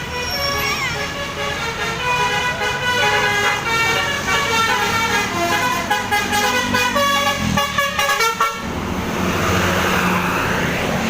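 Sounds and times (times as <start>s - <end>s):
musical air horn: 0.1s - 8.6s.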